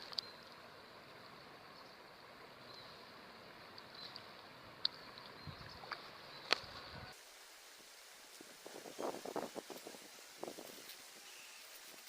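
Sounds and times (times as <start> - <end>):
flowing river water: 0.0 - 12.0.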